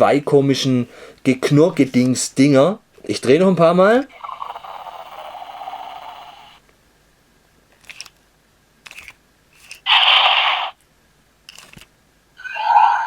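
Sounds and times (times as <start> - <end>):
loud electronic hiss: 4.1 - 6.6, 9.9 - 10.8
toy dragon growl: 4.1 - 6.6, 9.9 - 10.8, 12.4 - 13.0.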